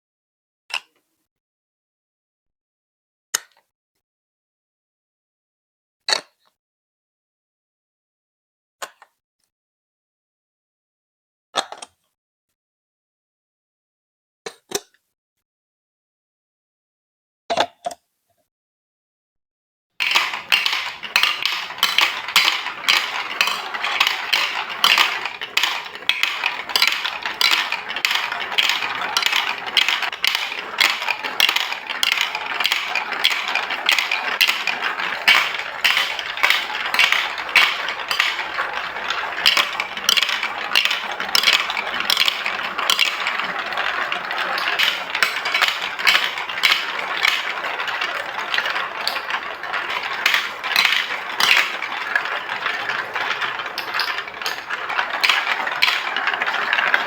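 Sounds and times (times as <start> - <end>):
marbles rolling and clattering: 20.0 - 57.0.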